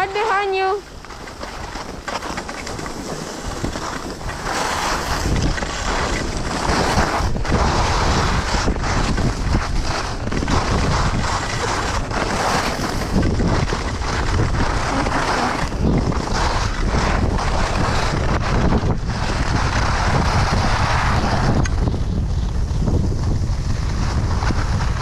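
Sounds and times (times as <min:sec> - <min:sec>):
skis scraping over snow: 0:00.0 - 0:25.0
wind buffeting microphone: 0:00.0 - 0:25.0.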